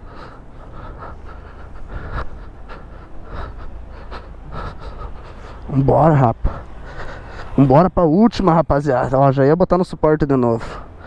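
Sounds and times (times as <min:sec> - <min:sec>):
person breathing hard: 0:00.0 - 0:07.8, 0:10.6 - 0:11.0
low steady rumble: 0:00.0 - 0:09.7.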